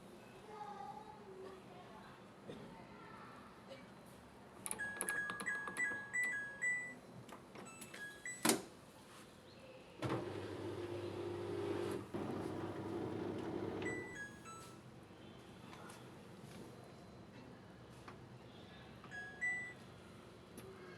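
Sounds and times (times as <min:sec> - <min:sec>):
washing machine humming: 0:10.0 - 0:14.4.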